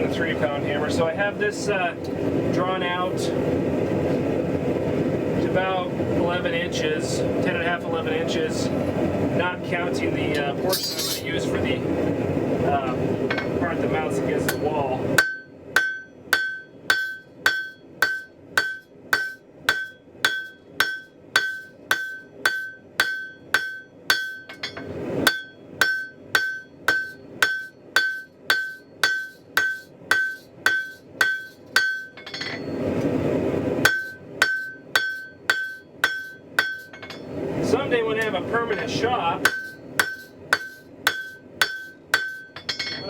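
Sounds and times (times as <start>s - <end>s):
hammer ringing on anvil: 10.7s - 11.3s, 14.4s - 32.8s, 33.8s - 37.3s, 38.7s - 43.0s.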